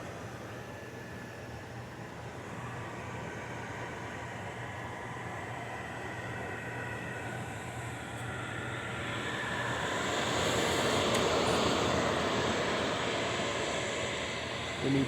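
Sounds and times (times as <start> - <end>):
microwave fans running: 0.0 - 15.0.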